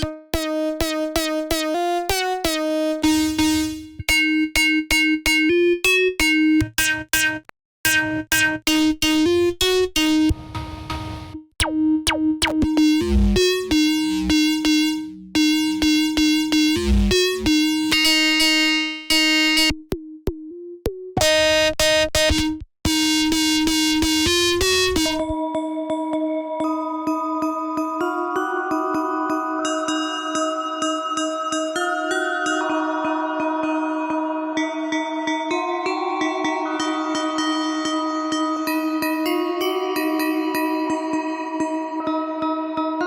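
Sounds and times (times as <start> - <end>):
synthesizer notes: 0.0 - 5.2, 5.8 - 25.4.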